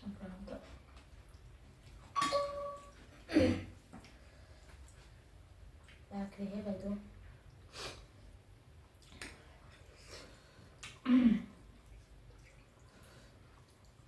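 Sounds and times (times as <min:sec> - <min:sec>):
wet chewing and lip-smacking: 0:03.9 - 0:06.1, 0:08.8 - 0:11.0, 0:11.6 - 0:14.0.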